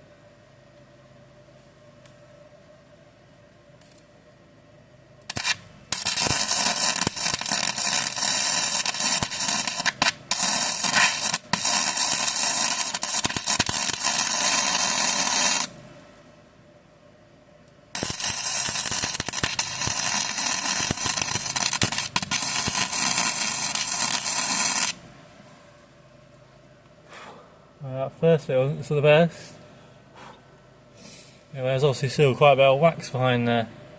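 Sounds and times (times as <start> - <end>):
welder crackling: 5.2 - 15.9, 17.9 - 25.1.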